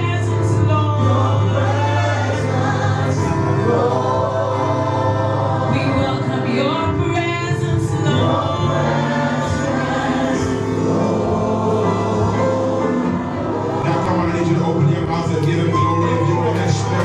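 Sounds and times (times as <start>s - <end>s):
gospel choir singing: 0.0s - 17.0s.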